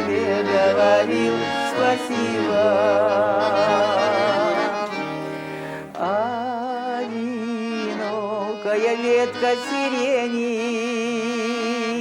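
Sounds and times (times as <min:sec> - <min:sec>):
instrumental accompaniment: 0:00.0 - 0:12.0
woman singing: 0:06.0 - 0:12.0.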